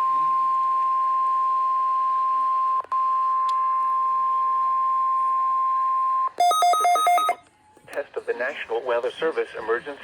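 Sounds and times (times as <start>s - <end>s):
steady alarm tone: 6.4s - 7.4s.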